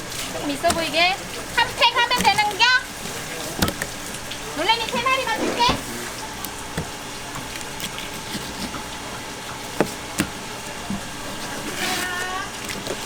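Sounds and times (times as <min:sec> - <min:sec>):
running water: 0:00.0 - 0:13.0
person speaking: 0:00.3 - 0:09.0
knife knocking on wooden board: 0:00.6 - 0:01.0, 0:03.5 - 0:04.1.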